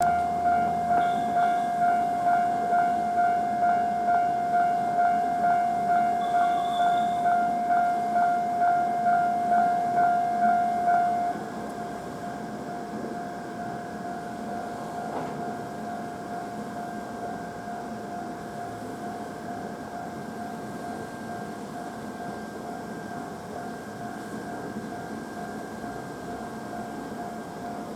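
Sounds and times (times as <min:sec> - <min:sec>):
level crossing alarm bell ringing: 0:00.0 - 0:21.6.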